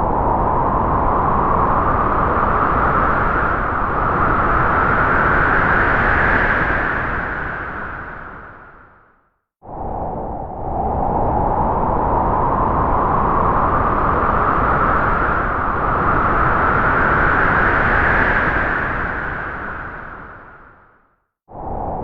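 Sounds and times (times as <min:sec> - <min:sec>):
whistling gust of wind: 0:09.6 - 0:20.7, 0:21.5 - 0:22.0.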